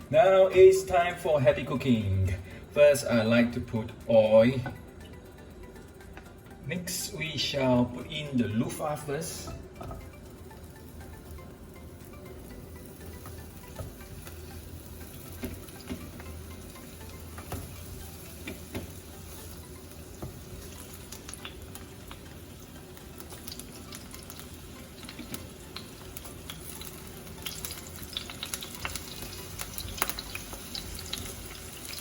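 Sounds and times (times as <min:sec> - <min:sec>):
vegetables sizzling in hot oil: 0:09.8 - 0:32.0.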